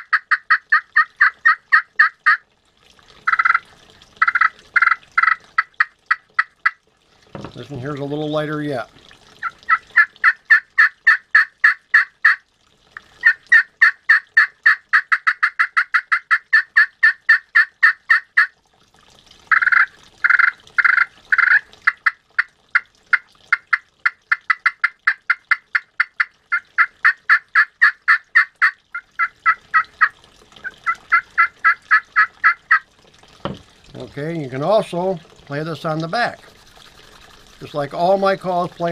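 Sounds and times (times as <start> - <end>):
turkey call notes: 0.0 - 2.4, 3.2 - 3.6, 4.2 - 6.8, 9.4 - 12.4, 13.0 - 18.6, 19.5 - 32.9.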